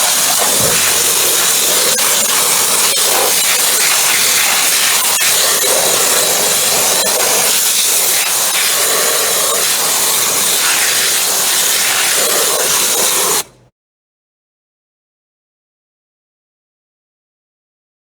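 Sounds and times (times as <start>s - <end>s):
sandblaster jet hissing: 0.0s - 13.6s.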